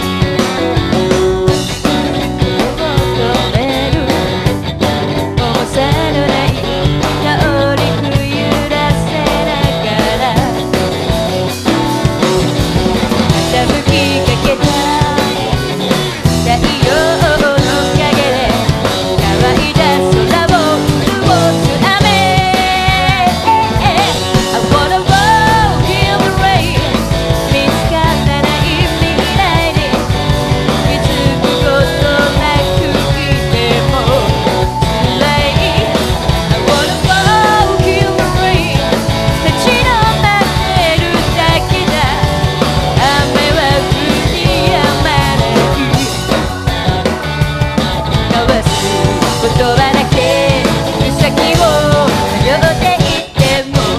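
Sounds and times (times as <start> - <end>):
live rock band playing: 0.0 - 53.9
person singing: 0.7 - 4.5, 5.2 - 10.8, 13.2 - 47.4, 48.2 - 53.9.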